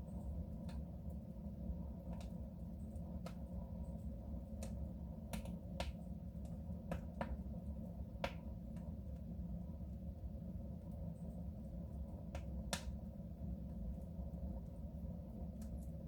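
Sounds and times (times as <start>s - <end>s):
wood fire crackling: 11.6s - 14.1s.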